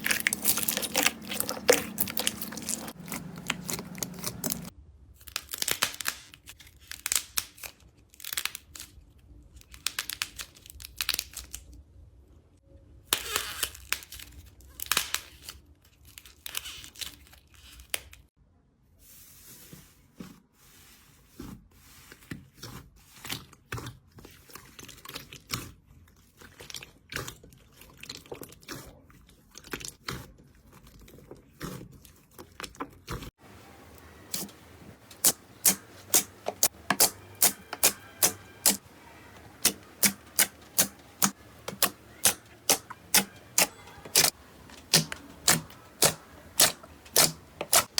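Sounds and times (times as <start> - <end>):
slime crackling and popping: 0.0 - 4.7, 5.3 - 8.8, 33.8 - 47.9.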